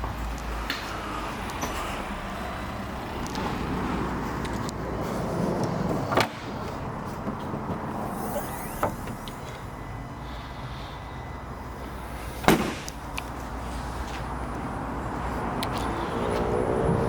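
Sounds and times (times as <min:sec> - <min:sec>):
steady low hum: 0:02.0 - 0:17.0
car doors shutting: 0:05.7 - 0:09.8.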